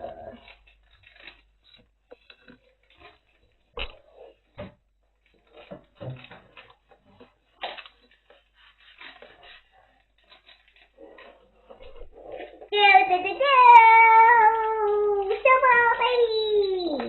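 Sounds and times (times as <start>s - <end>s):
plastic packaging crinkling: 0.0s - 12.6s.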